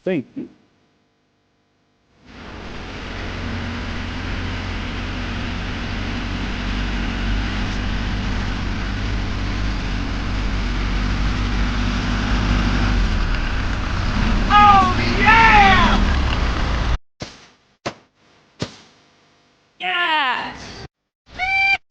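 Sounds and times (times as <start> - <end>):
vehicle engine humming: 2.2 - 17.0.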